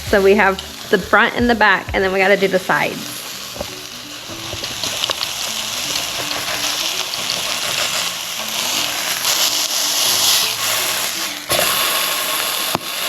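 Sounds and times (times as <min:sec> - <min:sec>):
meat sizzling in a frying pan: 0:00.0 - 0:13.0
oil popping and spattering: 0:03.5 - 0:13.0.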